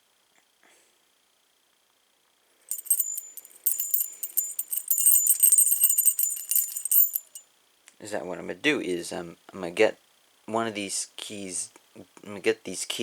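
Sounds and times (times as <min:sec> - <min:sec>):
metal keys jangling: 0:02.7 - 0:07.4.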